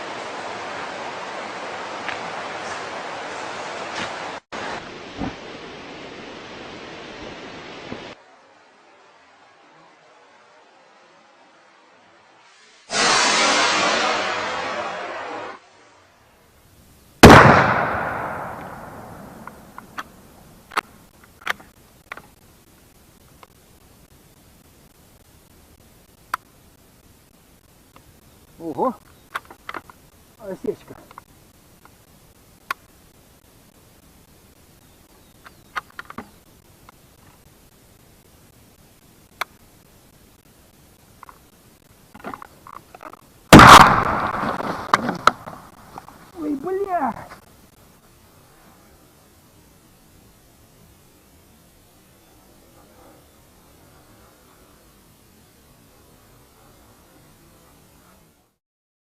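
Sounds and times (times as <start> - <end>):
gunshot with echo: 17.2 - 19.3, 43.5 - 44.7.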